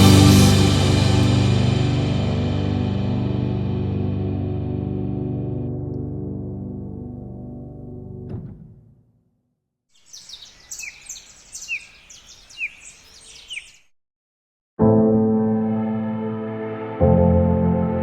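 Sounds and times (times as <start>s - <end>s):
song: 0.0s - 3.8s
ambient piano music: 0.0s - 8.4s, 14.8s - 18.0s
bird chirping: 10.0s - 13.9s
birds twittering: 10.0s - 13.9s.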